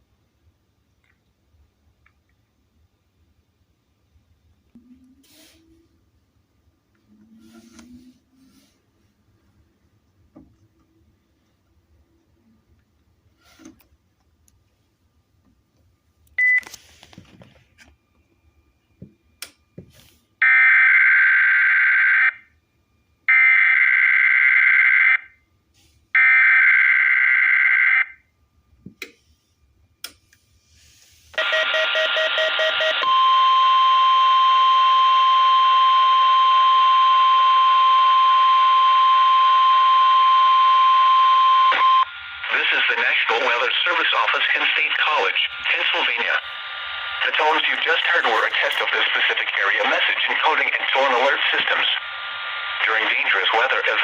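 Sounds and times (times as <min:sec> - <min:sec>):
short beep: 0:31.4 - 0:42.1
long steady alert tone: 0:31.4 - 0:42.2.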